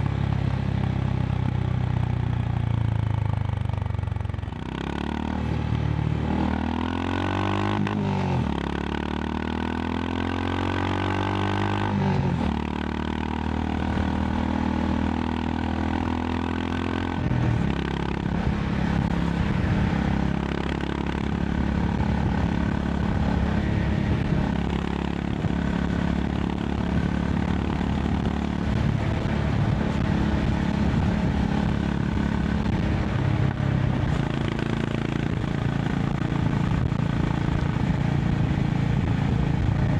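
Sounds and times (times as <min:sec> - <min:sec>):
motorcycle engine accelerating: 0:00.0 - 0:39.9
road noise: 0:00.0 - 0:39.9
wind noise: 0:13.7 - 0:39.9.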